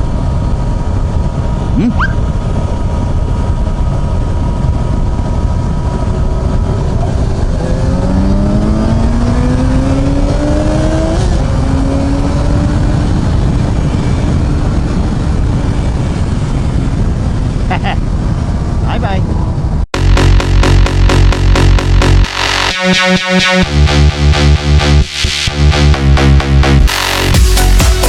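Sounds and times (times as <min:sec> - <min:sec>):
riding wind rush: 0:00.0 - 0:22.2
motorcycle engine revving: 0:00.8 - 0:18.8, 0:20.0 - 0:28.0.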